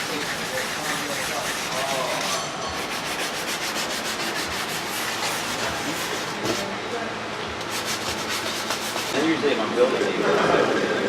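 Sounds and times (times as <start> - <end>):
sandpaper rasping on metal: 0.0 - 6.6, 7.7 - 9.2.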